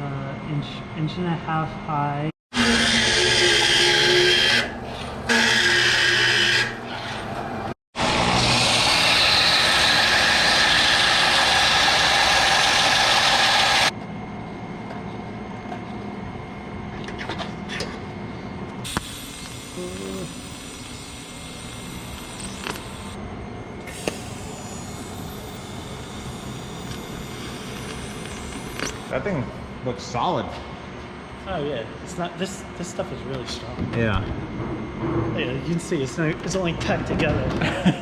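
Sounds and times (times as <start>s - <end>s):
workshop background noise: 0.0s - 38.0s
power tool cutting steel tubing: 2.5s - 7.3s, 8.0s - 13.9s, 18.9s - 23.2s, 23.9s - 29.1s.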